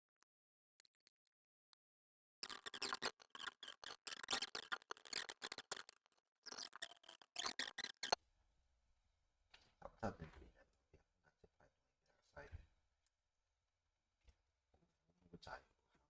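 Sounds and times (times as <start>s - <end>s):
small hand tools scratching and clicking: 2.4s - 8.2s.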